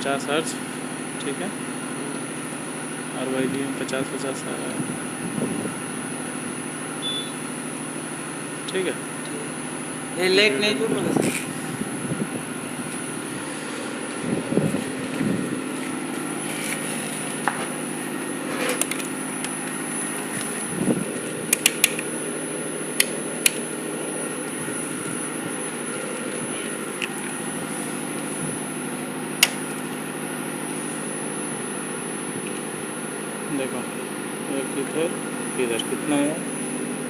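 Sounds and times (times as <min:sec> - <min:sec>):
power inverter humming: 0:00.0 - 0:37.0
faint high whine: 0:07.0 - 0:07.5
sharp clicks: 0:21.5 - 0:22.1, 0:23.0 - 0:23.7, 0:29.4 - 0:29.6.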